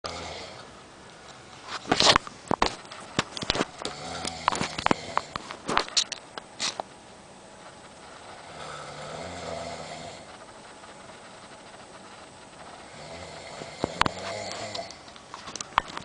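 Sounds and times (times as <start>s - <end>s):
snoring breath: 0.1s - 0.6s, 3.8s - 5.4s, 8.2s - 10.3s, 12.8s - 15.0s
sharp clicks and rustles: 1.2s - 7.0s, 10.3s - 16.0s.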